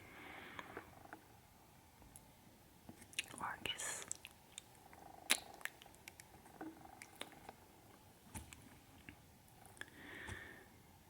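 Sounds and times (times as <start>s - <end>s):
faint hum: 0.0s - 11.0s
lip clicks and kiss smacks: 4.0s - 6.3s.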